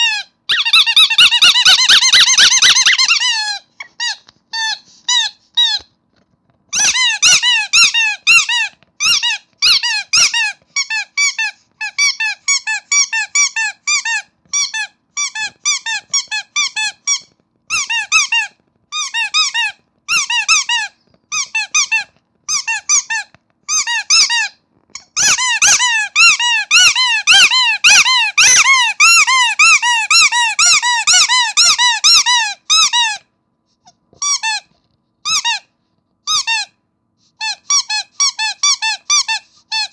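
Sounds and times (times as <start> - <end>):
squeaky toy squeaks: 0.0 - 6.0, 6.7 - 39.9.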